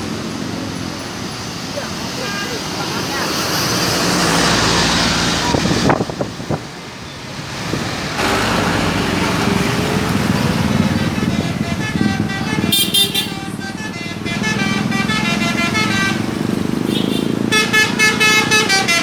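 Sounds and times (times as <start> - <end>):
bus engines: 0.0 - 19.0
multi-note bus horn: 10.9 - 19.0.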